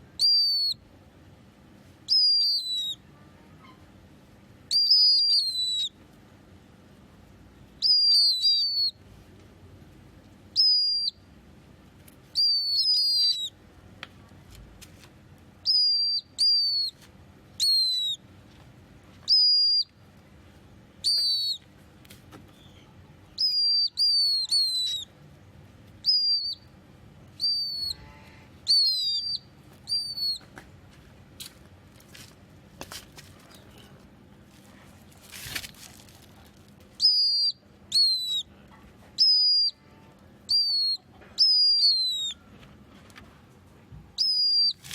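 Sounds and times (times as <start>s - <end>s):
bird whistling calls: 0.2s - 0.8s, 2.1s - 3.0s, 4.7s - 6.0s, 7.8s - 9.0s, 10.6s - 11.2s, 12.4s - 13.6s, 15.6s - 17.0s, 17.6s - 18.2s, 19.3s - 19.9s, 21.0s - 21.6s, 23.4s - 25.1s, 26.0s - 26.6s, 27.4s - 30.5s, 37.0s - 38.5s, 39.2s - 39.8s, 40.5s - 42.5s, 44.2s - 44.8s.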